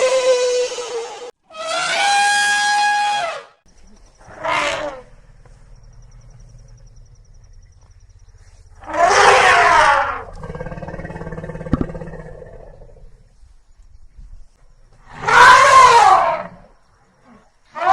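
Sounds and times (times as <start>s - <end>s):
elephant trumpeting: 4.2s - 5.2s, 8.8s - 12.1s.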